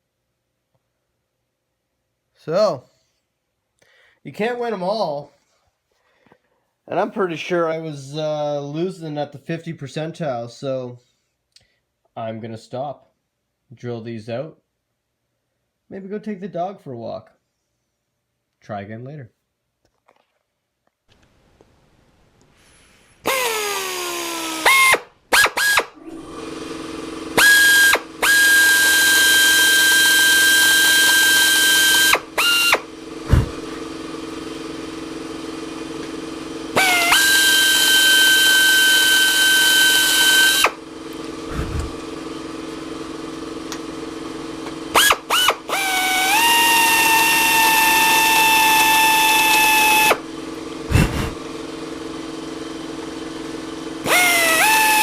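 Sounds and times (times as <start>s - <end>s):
drill whining: 23.2s - 55.0s
steady low hum: 32.9s - 36.8s, 40.7s - 44.6s, 49.9s - 53.8s.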